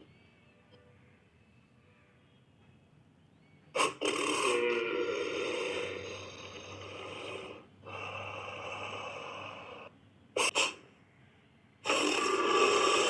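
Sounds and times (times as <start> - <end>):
creature snorts: 3.8 - 10.8, 11.8 - 13.0
creature breathy wheezing exhales: 11.8 - 13.0.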